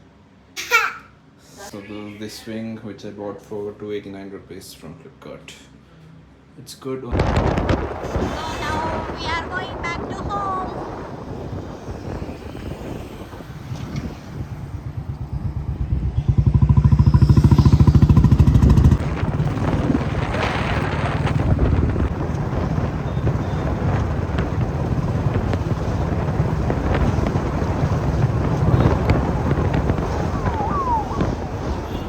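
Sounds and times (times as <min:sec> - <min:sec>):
road and traffic rumble: 0:07.1 - 0:32.0
engine low pulsing: 0:10.8 - 0:32.0.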